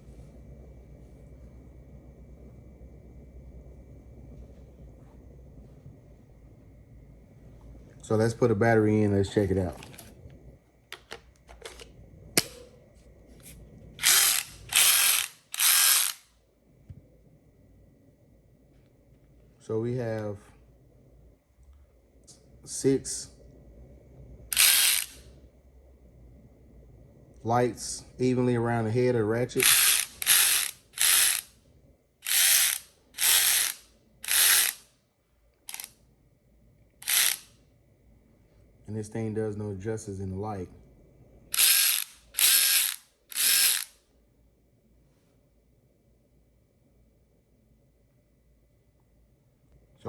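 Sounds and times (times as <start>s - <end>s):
cordless ratchet motor bursts: 14.0s - 16.3s, 24.5s - 25.2s, 29.6s - 31.5s, 32.2s - 34.8s, 35.7s - 35.9s, 37.0s - 37.5s, 41.5s - 44.0s.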